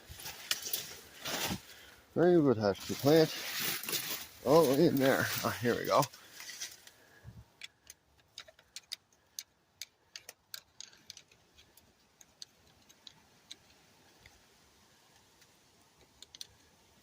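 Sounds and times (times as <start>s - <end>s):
faint small clicks and taps: 7.6s - 14.4s, 15.1s - 16.7s.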